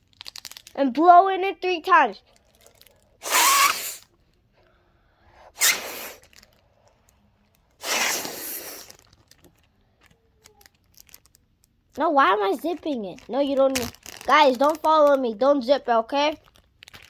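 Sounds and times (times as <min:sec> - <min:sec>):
breath blown into plastic bag: 0:03.2 - 0:04.1, 0:05.2 - 0:06.5, 0:07.8 - 0:09.1.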